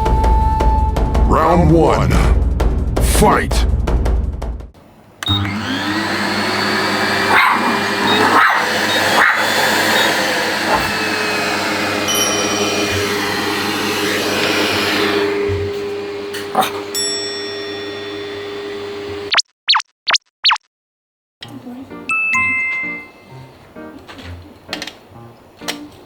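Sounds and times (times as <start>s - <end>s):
vacuum motor hum: 5.2s - 17.0s.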